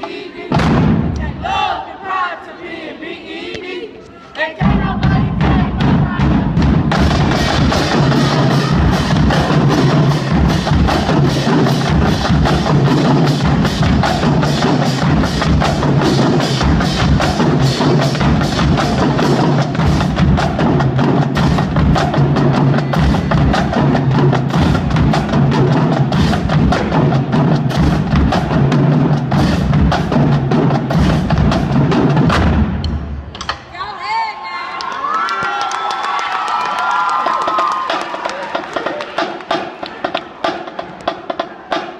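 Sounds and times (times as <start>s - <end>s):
drumline rapid drum strokes: 0.0s - 3.7s, 4.5s - 34.2s, 36.0s - 41.9s
heavy bass drum hits: 4.6s - 33.2s.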